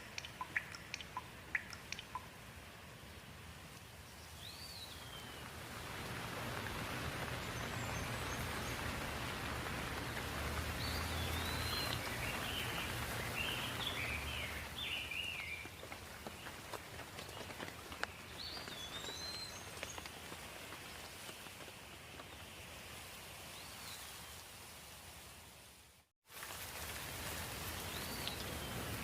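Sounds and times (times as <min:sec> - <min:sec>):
birds chirping: 0:00.0 - 0:02.4, 0:04.1 - 0:20.3
steady rain falling: 0:00.0 - 0:29.0.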